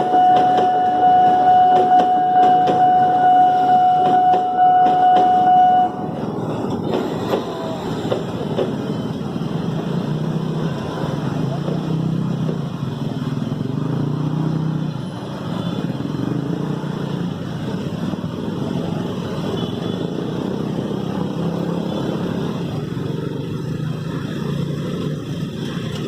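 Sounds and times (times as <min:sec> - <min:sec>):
road traffic: 0:00.0 - 0:26.0
motorcycle engines passing: 0:06.0 - 0:26.0.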